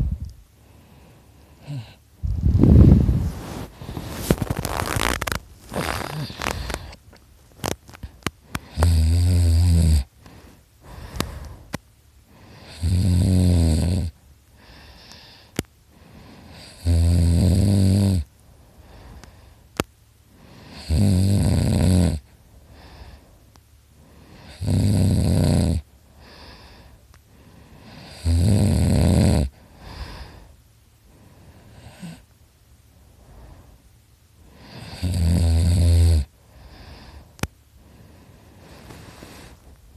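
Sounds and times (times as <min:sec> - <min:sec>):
man snoring loudly: 0:08.6 - 0:10.1, 0:12.6 - 0:14.2, 0:16.5 - 0:18.3, 0:20.6 - 0:22.2, 0:24.4 - 0:25.8, 0:27.8 - 0:29.5, 0:34.6 - 0:36.3
soft breaths out: 0:10.2 - 0:12.7, 0:18.4 - 0:20.8, 0:22.3 - 0:24.5, 0:26.0 - 0:28.0, 0:29.5 - 0:32.3, 0:36.4 - 0:39.8.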